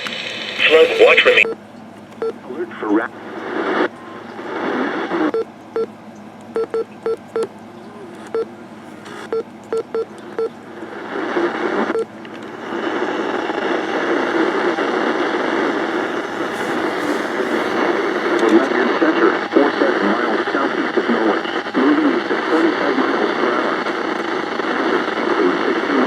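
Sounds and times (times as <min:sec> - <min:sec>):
radio static hiss: 0:00.0 - 0:01.6, 0:02.4 - 0:05.4, 0:08.0 - 0:09.4, 0:10.2 - 0:26.0
short radio beeps: 0:00.6 - 0:01.6.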